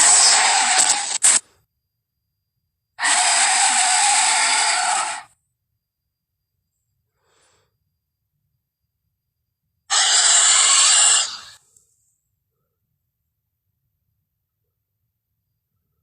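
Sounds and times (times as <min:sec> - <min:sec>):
loud breathy creature exhale: 0:09.9 - 0:11.6.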